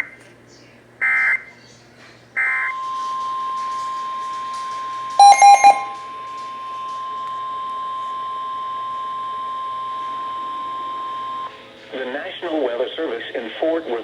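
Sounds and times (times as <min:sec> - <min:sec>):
quick loud beeps: 0:05.2 - 0:06.0
steady high alert tone: 0:05.2 - 0:06.0.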